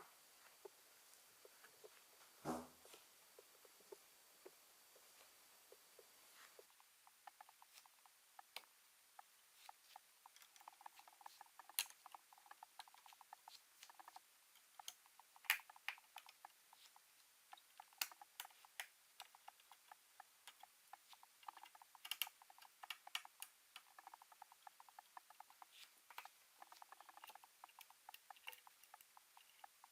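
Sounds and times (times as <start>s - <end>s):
laptop parts clicking: 9.6s - 29.9s.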